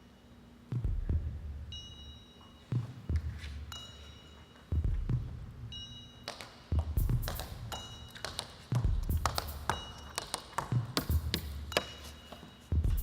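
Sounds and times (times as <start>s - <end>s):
deep heartbeat-like thumps: 0.8s - 1.6s, 4.8s - 5.6s, 6.7s - 7.5s, 12.8s - 13.0s.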